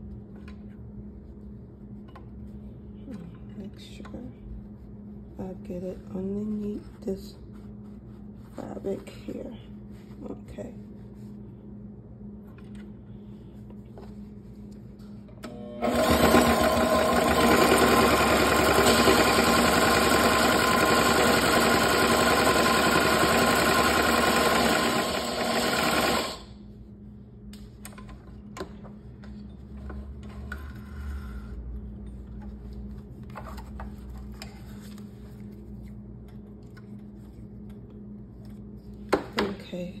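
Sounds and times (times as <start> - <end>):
sewing machine stitching: 15.8 - 26.5.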